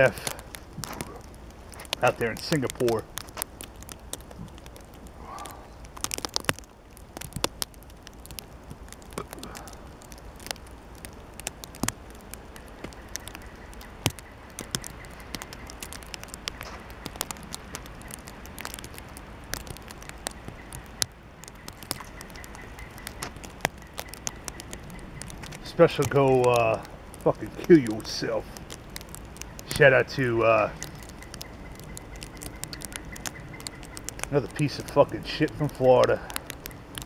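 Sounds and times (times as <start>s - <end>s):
light clicks and crackles: 0.0s - 37.0s.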